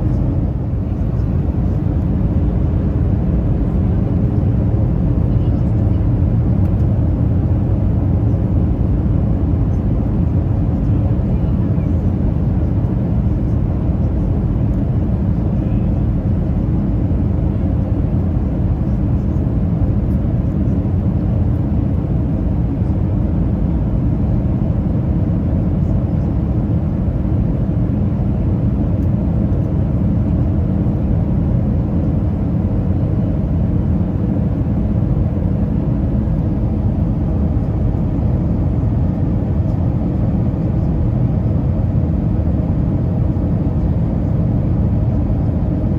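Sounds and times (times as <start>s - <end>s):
airliner cabin engine rumble: 0.0s - 45.9s.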